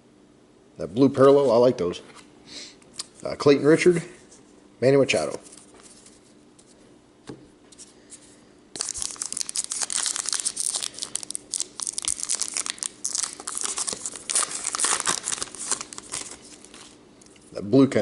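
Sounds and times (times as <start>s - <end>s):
card pack wrapper tearing and crinkling: 8.8s - 17.0s.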